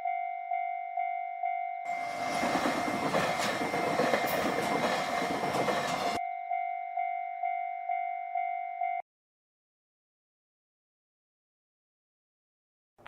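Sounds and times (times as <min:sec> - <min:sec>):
railroad crossing bell ringing: 0:00.0 - 0:09.0
train passing: 0:01.9 - 0:06.2.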